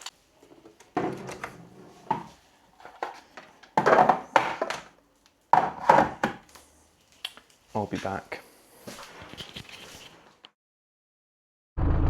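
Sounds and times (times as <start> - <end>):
tools clattering and knocking: 0.4 - 4.9, 5.5 - 6.5.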